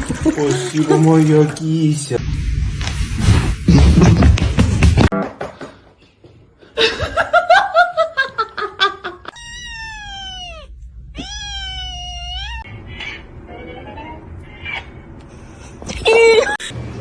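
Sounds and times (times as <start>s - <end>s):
cats meowing: 9.3s - 15.1s.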